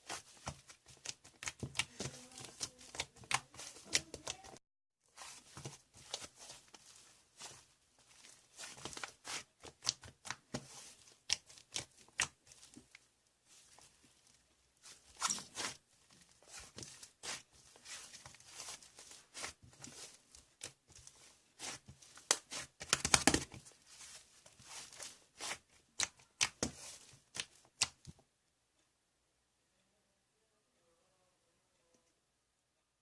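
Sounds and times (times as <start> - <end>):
rustling and scraping: 5.1 - 27.6.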